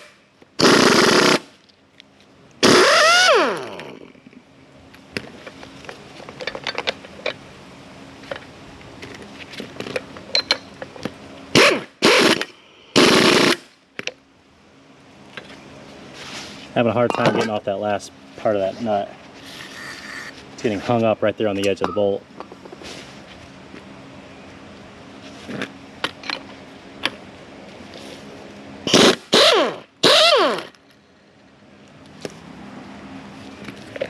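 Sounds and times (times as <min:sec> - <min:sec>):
impact wrench bursts: 0:00.0 - 0:01.6, 0:02.6 - 0:03.9, 0:11.5 - 0:13.7, 0:28.9 - 0:30.8.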